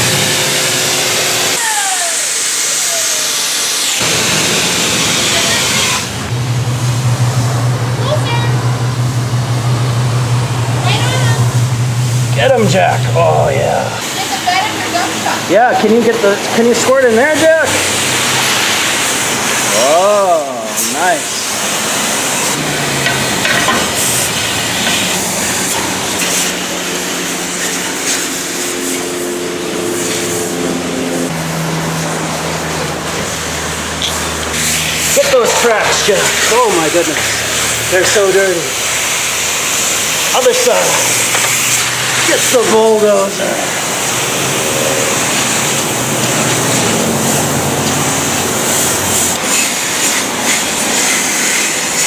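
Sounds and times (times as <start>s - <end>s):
high-pressure water spraying: 0.0s - 52.0s
low hum: 4.0s - 14.0s, 28.7s - 49.4s.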